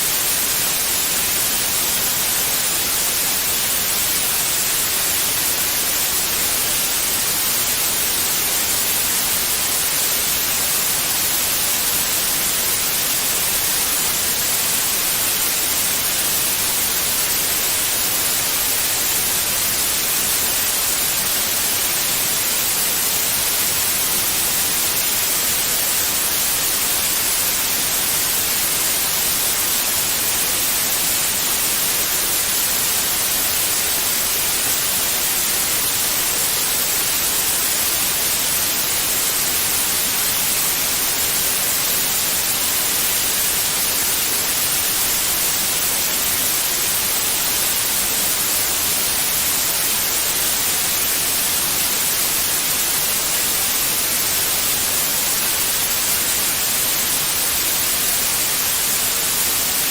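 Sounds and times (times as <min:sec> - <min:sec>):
white noise hiss: 0:00.0 - 0:59.9.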